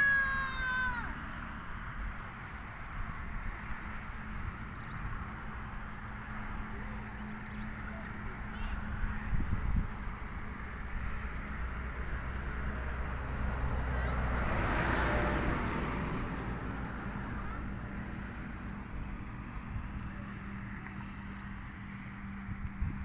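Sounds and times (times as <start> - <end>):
motor vehicle passing by: 0.0 - 23.0.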